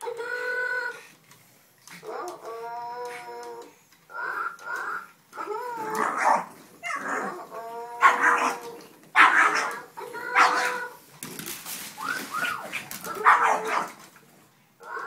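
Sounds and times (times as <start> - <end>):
dog barking and whining: 2.0 - 11.0, 12.4 - 14.1.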